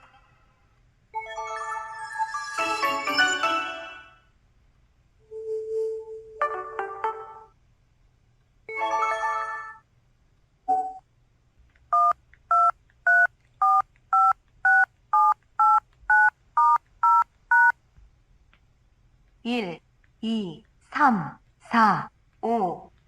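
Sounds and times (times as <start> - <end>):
keypad dial tone beeps: 12.0 - 17.8.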